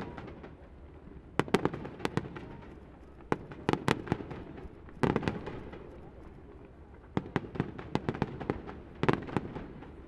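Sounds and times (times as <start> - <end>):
fireworks bursting with sharp bangs: 0.0 - 6.0, 7.1 - 10.0.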